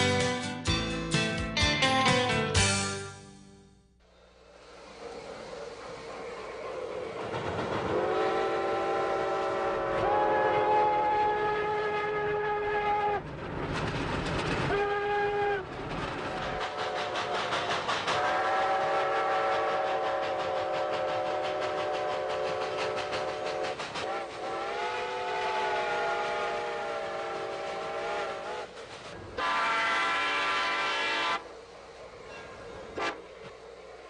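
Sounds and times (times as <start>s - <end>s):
wheels clicking on track: 4.7s - 10.0s, 13.2s - 14.9s, 15.6s - 25.0s
model train whistle: 7.9s - 13.2s, 14.7s - 15.6s, 18.2s - 28.7s, 29.4s - 31.5s.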